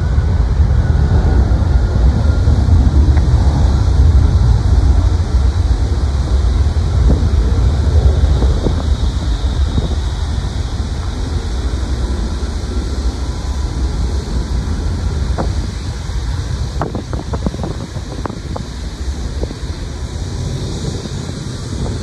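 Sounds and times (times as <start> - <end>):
jet engines rumbling: 0.0 - 22.0
wind buffeting microphone: 0.0 - 22.0.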